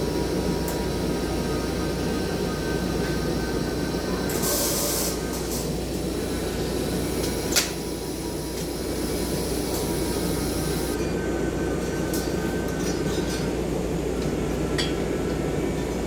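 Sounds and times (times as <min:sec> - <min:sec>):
electric arc welding crackle: 0:00.0 - 0:11.0.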